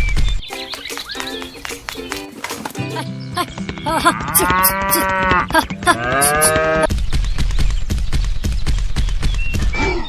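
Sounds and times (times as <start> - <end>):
cow mooing: 4.1 - 6.9.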